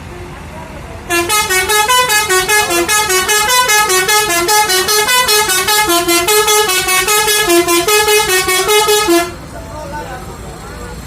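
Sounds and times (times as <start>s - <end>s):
bus musical air horn tune: 1.1s - 9.5s.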